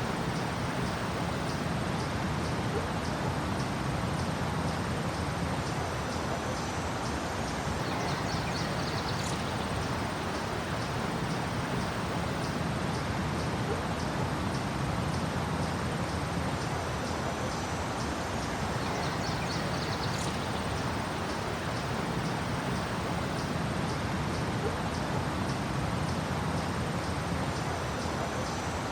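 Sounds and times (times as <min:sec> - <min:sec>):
small birds chirping: 0:00.0 - 0:01.7, 0:07.8 - 0:12.6, 0:18.6 - 0:23.6
street traffic rumble: 0:00.0 - 0:01.7.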